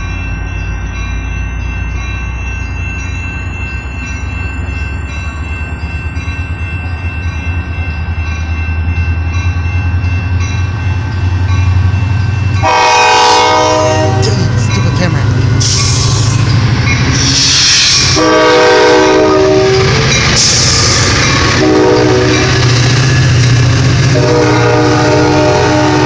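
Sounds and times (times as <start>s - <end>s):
diesel locomotive idling: 3.0s - 26.0s
train horn chord: 12.6s - 14.6s, 18.1s - 20.1s, 21.5s - 22.8s, 24.0s - 26.0s.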